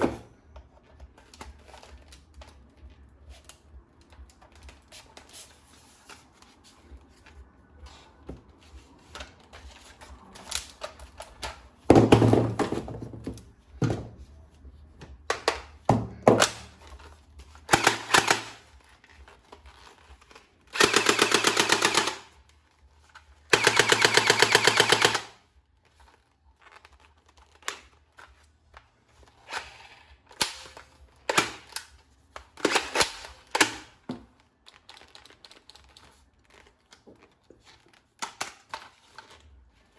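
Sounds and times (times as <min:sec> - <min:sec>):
toy gun firing bursts: 0:17.7 - 0:18.6, 0:20.7 - 0:22.3, 0:23.6 - 0:25.4.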